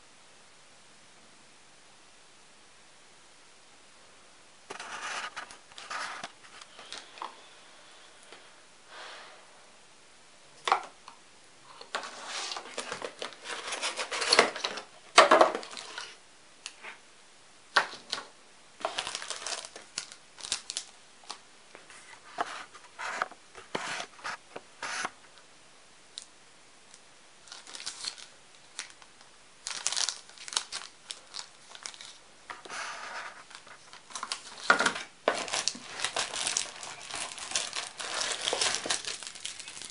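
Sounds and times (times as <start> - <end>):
packaging crinkling and tearing: 11.9 - 16.2, 17.8 - 21.4, 27.4 - 32.2, 33.4 - 39.9.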